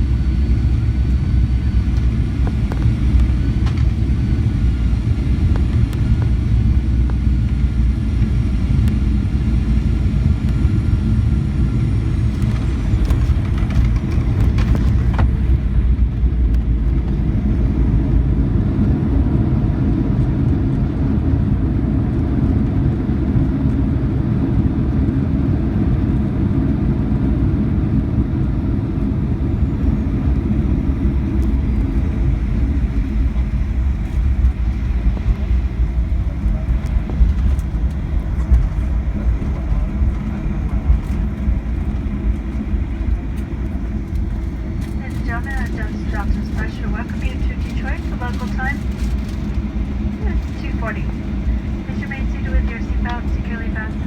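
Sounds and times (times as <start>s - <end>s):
jet engines and airflow rumble: 0.0s - 54.0s
faint whine: 29.0s - 54.0s.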